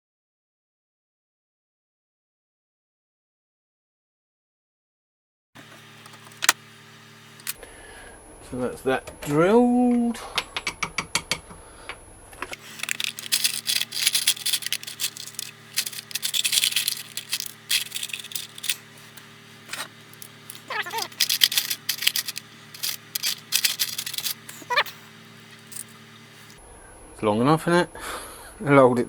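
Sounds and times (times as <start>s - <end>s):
metal pieces clinking: 7.3s - 7.6s, 12.6s - 26.6s
squeaky scrapes: 12.6s - 26.6s.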